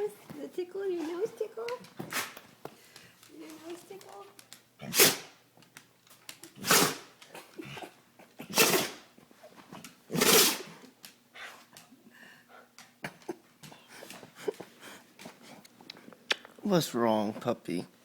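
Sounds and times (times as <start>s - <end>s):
dog sneezing: 2.0s - 2.4s, 4.8s - 5.4s, 6.6s - 9.2s, 10.1s - 10.8s.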